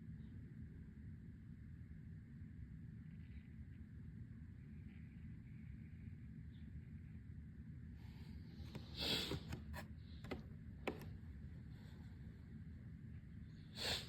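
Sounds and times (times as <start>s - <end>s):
person sharp breathy intake: 13.8s - 14.0s.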